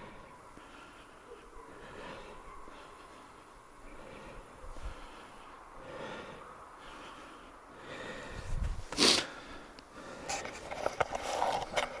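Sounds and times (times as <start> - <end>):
person breathing heavily: 0.0 - 12.0
sharp loud snort: 8.9 - 9.4.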